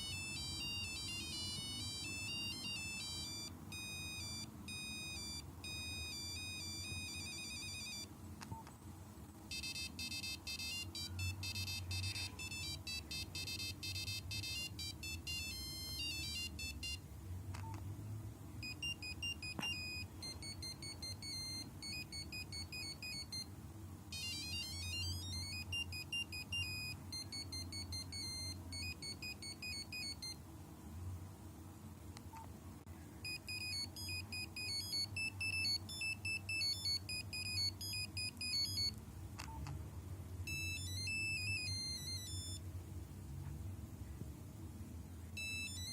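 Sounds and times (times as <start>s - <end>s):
mobile phone ringtone beeping melodies: 0.0s - 8.1s, 9.5s - 17.0s, 18.6s - 23.5s, 24.1s - 30.4s, 33.2s - 39.0s, 40.5s - 42.6s, 45.4s - 45.9s.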